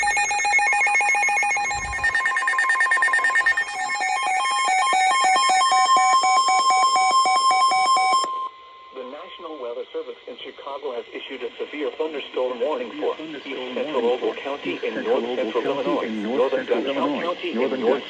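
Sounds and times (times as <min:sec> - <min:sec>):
steady electronic tone: 0:00.0 - 0:05.3
even electronic beeps: 0:00.0 - 0:08.5
warbling electronic alert tones: 0:00.0 - 0:08.5.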